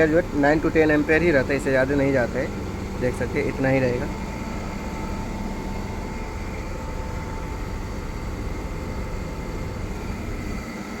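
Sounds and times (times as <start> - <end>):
air conditioner unit humming: 0.0 - 11.0.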